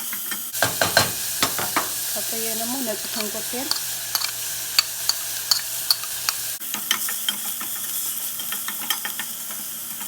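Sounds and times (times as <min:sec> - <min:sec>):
onion and garlic sizzling in oil: 0:00.0 - 0:10.0
utensil clicking against pot: 0:00.6 - 0:06.6.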